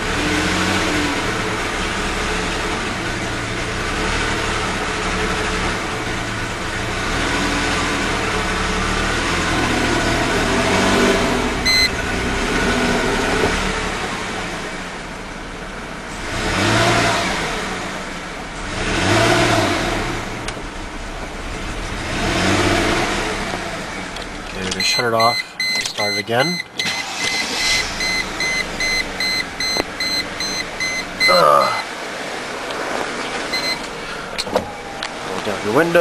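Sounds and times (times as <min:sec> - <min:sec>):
car engine revving unevenly: 0:00.0 - 0:36.0
short electronic beep: 0:11.6 - 0:12.0, 0:24.8 - 0:31.8, 0:33.5 - 0:33.8.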